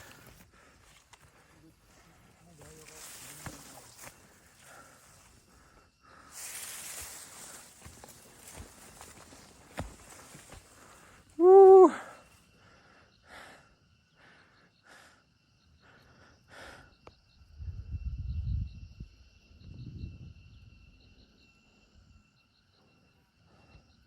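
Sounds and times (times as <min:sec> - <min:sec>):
insects droning: 0:00.0 - 0:24.0
wind rumbling on microphone: 0:17.3 - 0:21.2.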